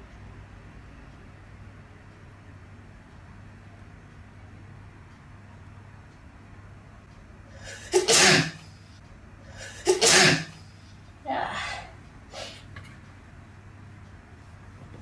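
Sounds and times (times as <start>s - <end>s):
woman sneezing: 9.6s - 10.6s.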